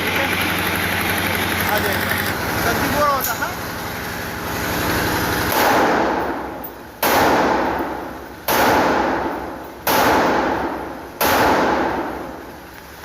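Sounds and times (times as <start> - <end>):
rifle shots with echo: 5.4 - 12.5.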